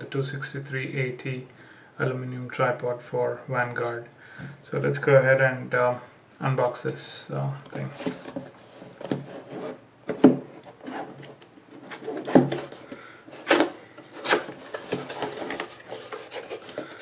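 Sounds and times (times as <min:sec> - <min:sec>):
packaging rubbing and scraping: 0:07.8 - 0:09.8, 0:10.5 - 0:17.0.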